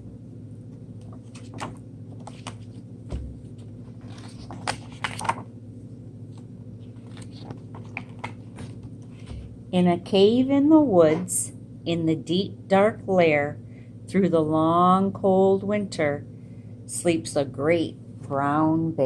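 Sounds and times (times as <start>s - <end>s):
low electrical hum: 0.0s - 19.0s
book pages turning: 0.9s - 5.5s, 6.2s - 9.6s.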